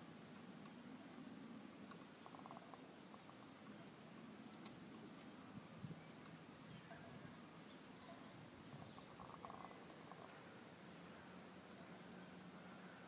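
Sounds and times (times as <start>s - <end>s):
soft buzzing rattle: 8.8s - 11.2s.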